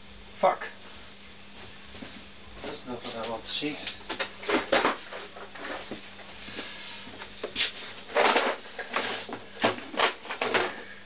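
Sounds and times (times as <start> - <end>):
tools clattering and clinking: 4.1 - 6.0, 7.9 - 10.9.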